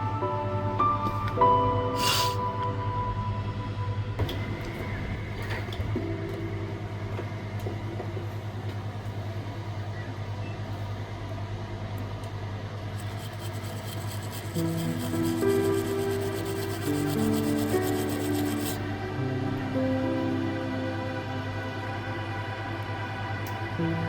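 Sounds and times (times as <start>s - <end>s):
background music: 0.0s - 7.9s, 14.3s - 24.0s
low electrical hum: 2.5s - 23.7s.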